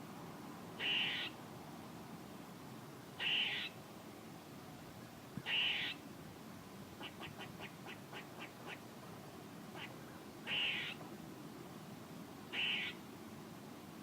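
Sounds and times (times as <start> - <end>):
squirrel harsh buzzy calls: 0.8 - 1.4, 3.2 - 3.8, 5.4 - 6.0, 7.0 - 8.9, 9.7 - 11.0, 12.5 - 13.0.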